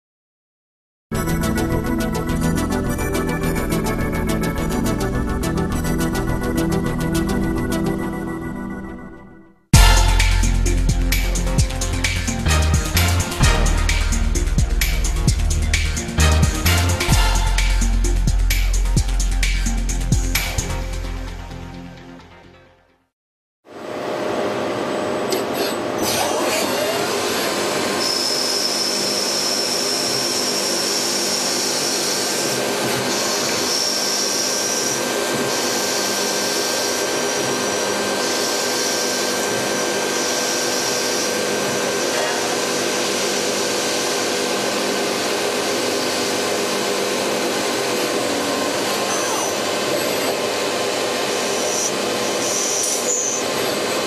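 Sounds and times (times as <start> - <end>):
high-pitched whine: 1.2 - 21.2, 23.8 - 54.0
lathe mechanical hum and hiss: 23.8 - 54.0.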